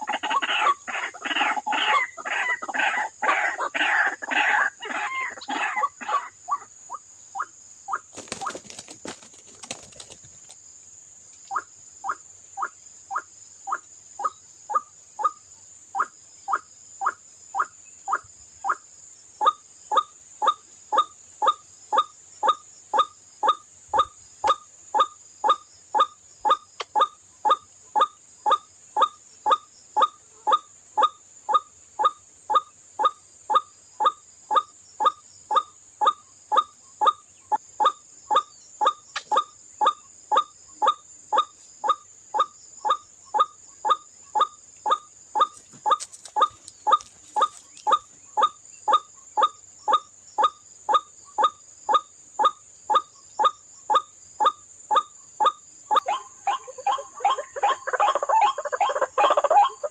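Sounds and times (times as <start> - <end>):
waterhen calling: 0.0 - 8.8, 55.9 - 59.9
crackling noise: 45.5 - 48.2.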